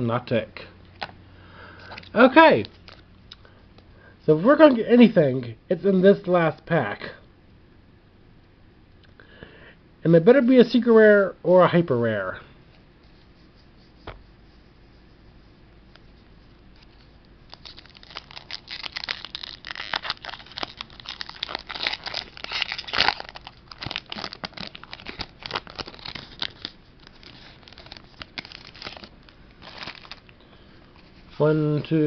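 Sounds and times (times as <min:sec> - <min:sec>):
foil wrapper tearing and crinkling: 0:17.5 - 0:30.3.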